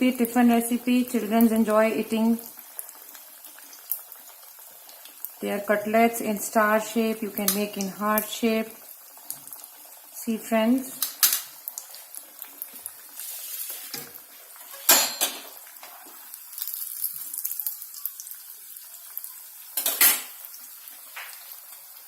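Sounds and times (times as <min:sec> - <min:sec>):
food sizzling in hot oil: 0:00.0 - 0:22.0
kitchen utensils clattering: 0:13.9 - 0:15.6, 0:19.8 - 0:20.4
utensils clinking against dishes: 0:14.7 - 0:15.4.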